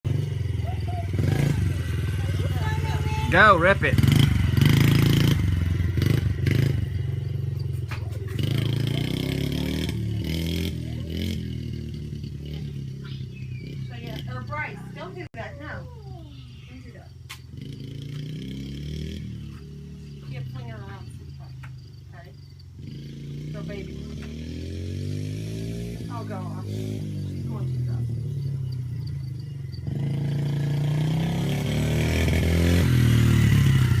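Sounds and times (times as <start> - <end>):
dirt bike engine revving: 0.1 - 15.8, 16.7 - 34.0.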